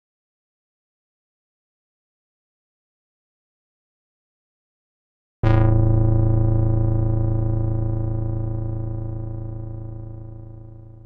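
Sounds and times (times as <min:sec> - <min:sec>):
synthesizer bass note: 0:05.4 - 0:11.0.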